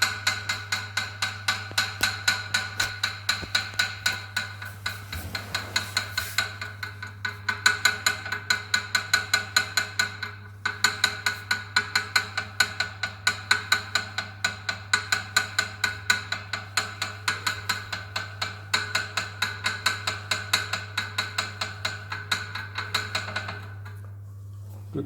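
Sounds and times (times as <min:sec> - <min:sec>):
exercise bike metallic clacks: 0:00.0 - 0:24.0.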